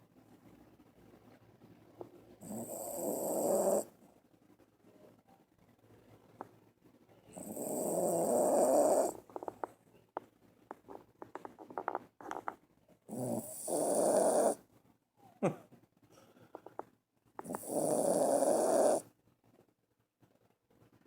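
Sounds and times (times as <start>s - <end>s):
dog snoring loudly: 2.4s - 3.9s, 7.3s - 9.2s, 13.1s - 14.6s, 17.4s - 19.1s.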